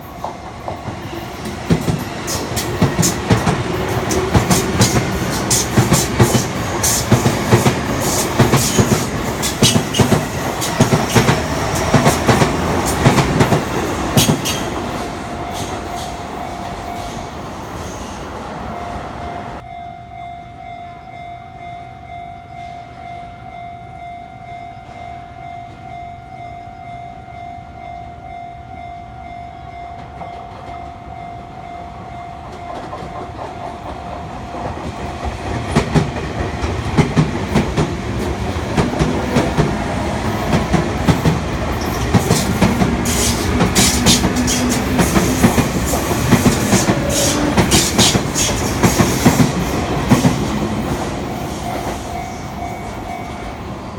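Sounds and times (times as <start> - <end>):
level-crossing warning bell: 0.0 - 17.6, 18.7 - 53.9
electric train passing: 0.0 - 53.9
wheels clacking over rail joints: 0.2 - 16.1, 32.4 - 52.0.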